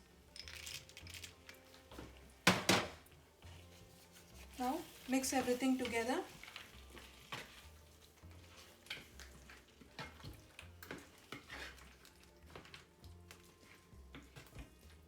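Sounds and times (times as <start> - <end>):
spoon scraping a pan: 3.5 - 14.5.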